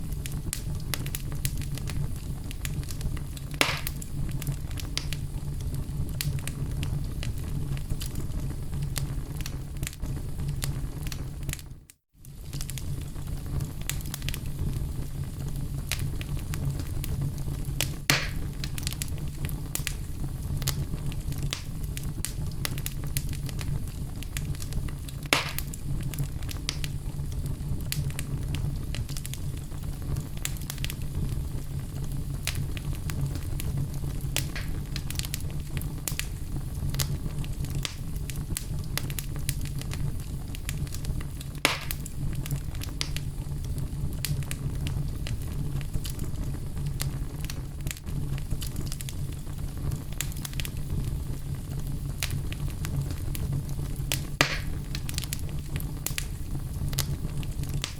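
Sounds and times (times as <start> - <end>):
fire crackles: 0.0 - 57.9
flames rumbling: 0.0 - 57.9
loud fire pops: 0.0 - 57.9.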